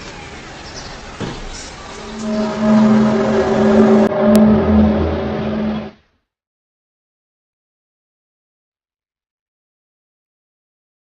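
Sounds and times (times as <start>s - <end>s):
loud noisy sound: 1.8s - 6.0s.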